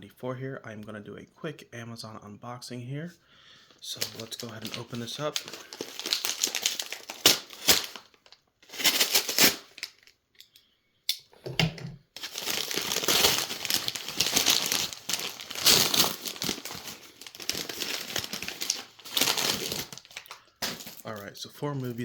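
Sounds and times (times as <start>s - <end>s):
packaging crinkling and tearing: 3.9s - 10.2s, 12.2s - 22.0s.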